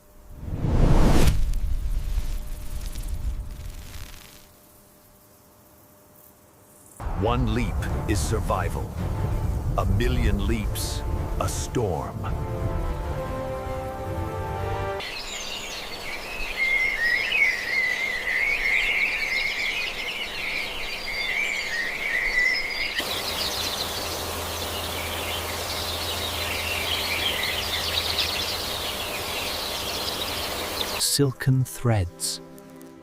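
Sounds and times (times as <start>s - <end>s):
birds and insects chirping: 0.0s - 33.0s
low steady hum: 4.5s - 16.6s, 23.0s - 31.0s.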